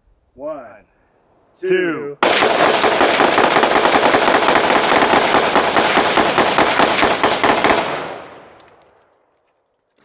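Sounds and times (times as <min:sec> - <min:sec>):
rapid gunfire volley: 0:02.2 - 0:08.3.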